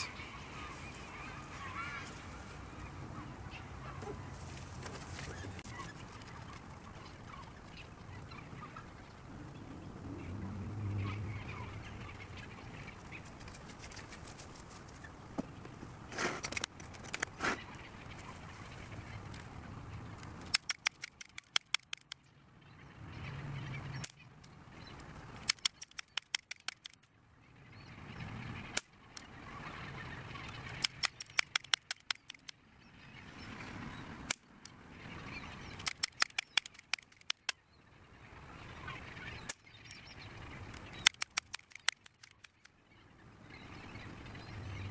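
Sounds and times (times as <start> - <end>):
sharp clicks: 20.2 - 22.2, 25.4 - 27.1, 30.7 - 32.6, 35.8 - 37.6, 40.7 - 42.7.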